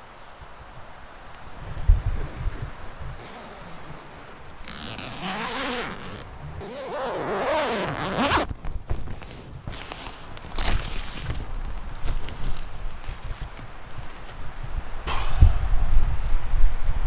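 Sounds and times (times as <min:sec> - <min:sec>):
tent zipper rasping open: 0:03.2 - 0:11.5.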